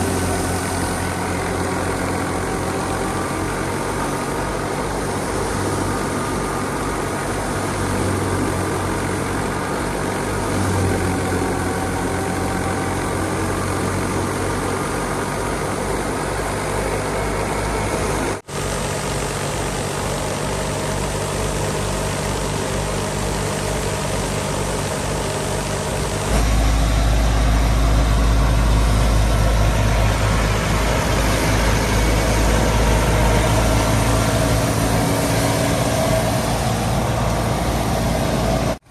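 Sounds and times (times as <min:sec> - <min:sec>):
tractor diesel engine running: 0:00.0 - 0:38.9.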